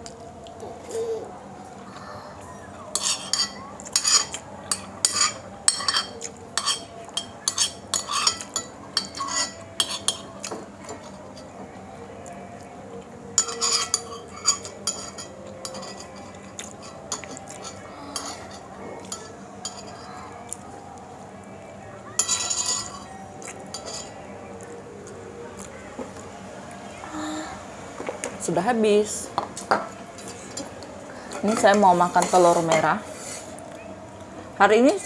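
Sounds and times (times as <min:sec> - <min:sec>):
cutlery clinking against a dish: 0:02.9 - 0:11.7, 0:13.4 - 0:20.6, 0:22.1 - 0:24.7, 0:29.4 - 0:32.9.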